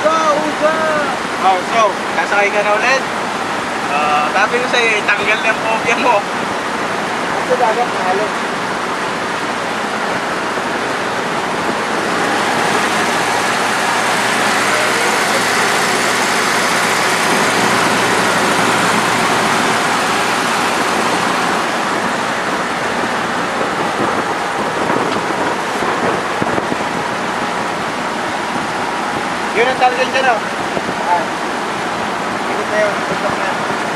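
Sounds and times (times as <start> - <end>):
motorboat engine running: 0.0 - 33.9
wind rushing: 9.7 - 29.3.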